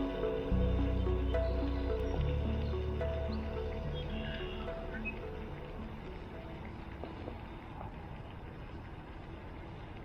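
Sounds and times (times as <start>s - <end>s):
background music: 0.0s - 7.8s.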